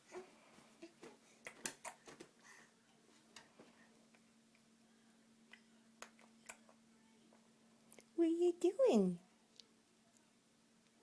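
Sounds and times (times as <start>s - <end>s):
faint steady hum: 0.0s - 11.0s.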